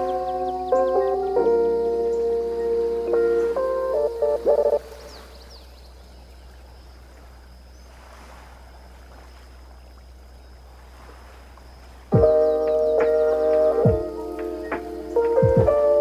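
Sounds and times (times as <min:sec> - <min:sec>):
faint high bird chirps: 0:00.0 - 0:07.0, 0:12.2 - 0:16.0
sea waves on a beach: 0:00.0 - 0:15.5.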